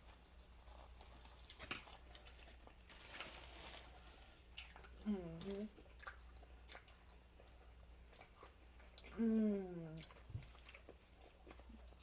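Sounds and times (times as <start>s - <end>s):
chewing and mouth clicks: 4.4s - 9.2s, 9.8s - 12.0s.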